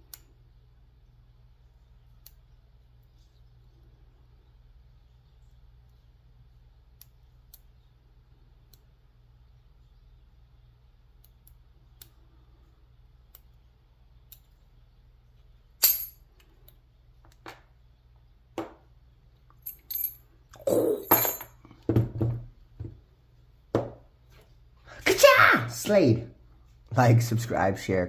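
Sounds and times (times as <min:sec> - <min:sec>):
padlock clinking and knocking: 0:15.8 - 0:16.2.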